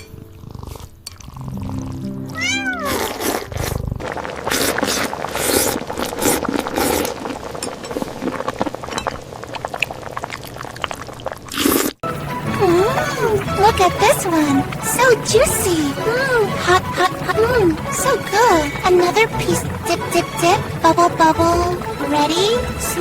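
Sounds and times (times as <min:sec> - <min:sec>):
wet crunching eating sounds: 0:00.4 - 0:08.8
background music: 0:01.4 - 0:04.0, 0:12.0 - 0:23.0
cat meowing: 0:02.3 - 0:03.4.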